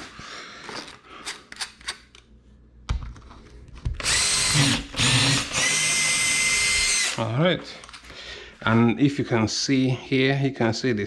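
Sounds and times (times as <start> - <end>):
power drill whining: 4.0 - 7.3.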